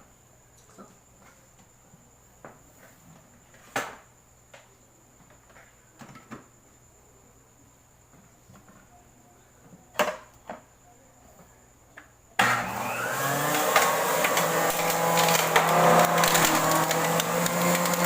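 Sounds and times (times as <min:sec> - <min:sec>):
electric blender chopping carrot: 0:12.4 - 0:18.0.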